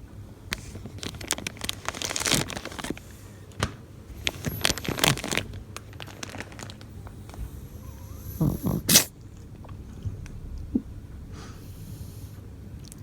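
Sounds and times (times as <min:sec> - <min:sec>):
cat snoring: 0:04.1 - 0:05.4, 0:07.1 - 0:12.4.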